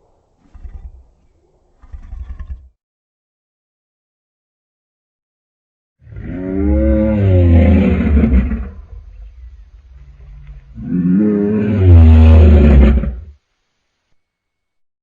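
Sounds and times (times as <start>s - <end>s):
deep creature roars: 6.0s - 8.8s, 10.2s - 13.3s.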